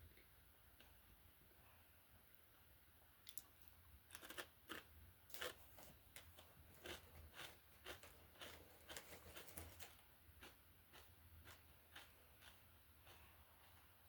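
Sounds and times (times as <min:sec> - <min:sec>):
potato chips crunching: 0:04.1 - 0:13.8.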